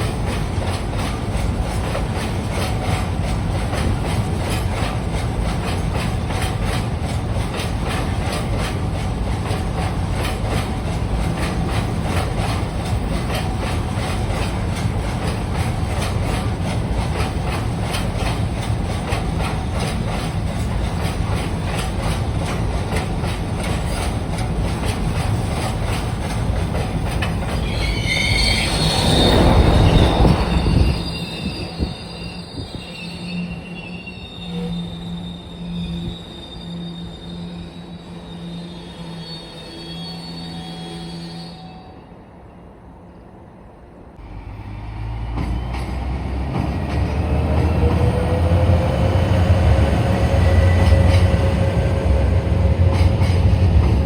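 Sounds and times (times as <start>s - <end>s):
train wheels clicking over rail joints: 0.0s - 32.9s, 45.2s - 54.0s
steel wheels squealing on rail: 0.0s - 42.7s, 44.2s - 54.0s.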